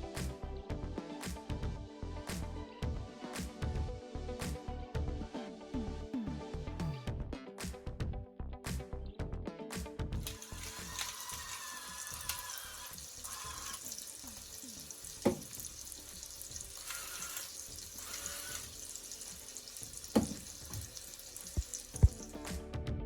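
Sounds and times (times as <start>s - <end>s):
electric salt grinder grinding: 10.2s - 22.4s.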